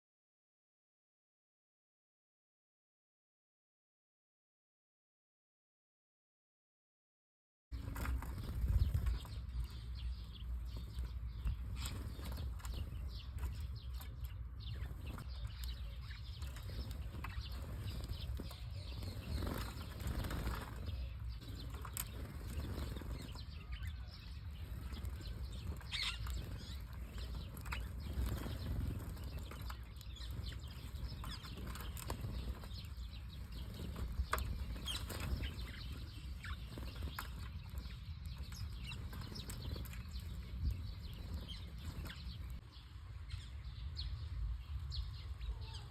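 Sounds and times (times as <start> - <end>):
bird wings flapping: 7.8 - 42.6.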